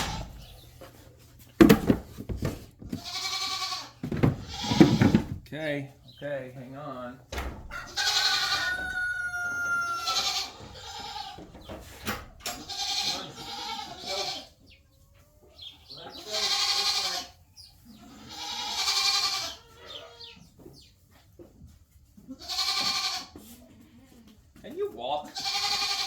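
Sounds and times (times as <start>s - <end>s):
goats bleating: 0.0s - 0.5s, 2.9s - 5.3s, 7.8s - 11.6s, 12.6s - 14.6s, 16.0s - 20.4s, 22.2s - 24.2s, 25.2s - 26.0s.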